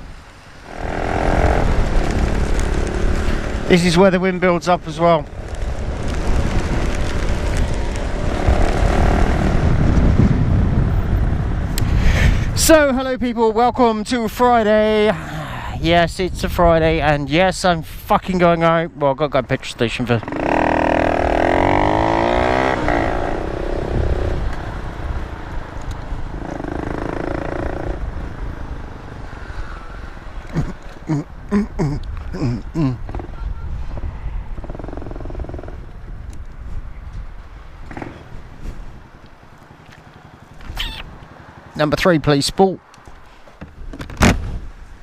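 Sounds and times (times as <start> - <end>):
wind roaring over microphone: 0.0 - 45.0
motorcycle engine at speed: 0.6 - 11.6, 20.2 - 28.6.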